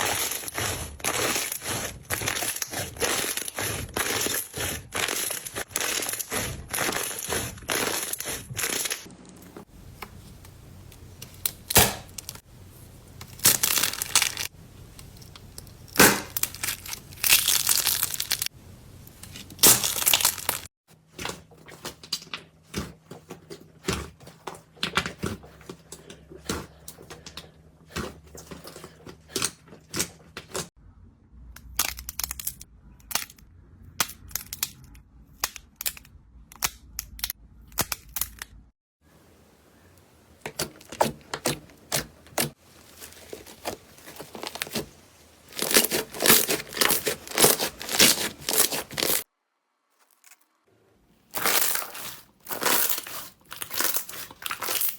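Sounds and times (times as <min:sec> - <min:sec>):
slime crunchy crackling: 0:00.0 - 0:09.1, 0:13.2 - 0:14.6, 0:15.8 - 0:18.5, 0:19.5 - 0:20.7, 0:40.8 - 0:49.3, 0:51.3 - 0:54.9.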